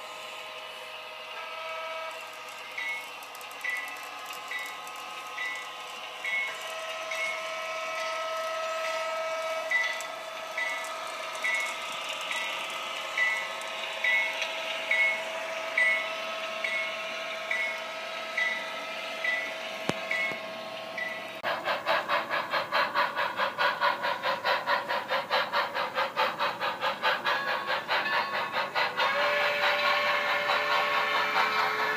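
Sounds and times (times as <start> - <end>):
model locomotive bell ringing: 2.7 - 8.2, 9.7 - 20.4, 21.0 - 21.4, 27.3 - 28.6.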